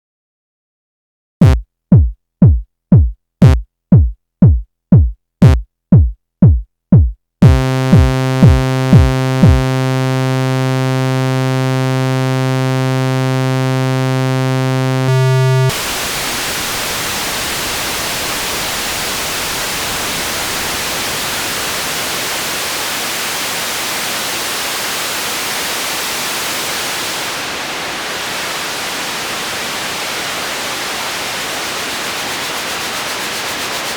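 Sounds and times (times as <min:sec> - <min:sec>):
synthesizer thumps dropping in pitch: 0:01.4 - 0:09.7
synthesizer buzzing tone: 0:14.9 - 0:17.4
white noise hiss: 0:15.7 - 0:33.9.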